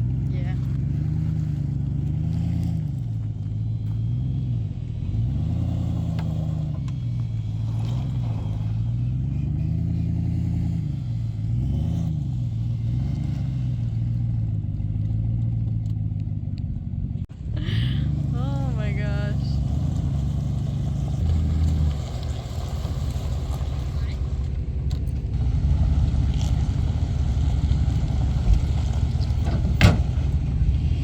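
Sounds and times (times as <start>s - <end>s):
vehicle engine revving under load: 0.0s - 31.0s.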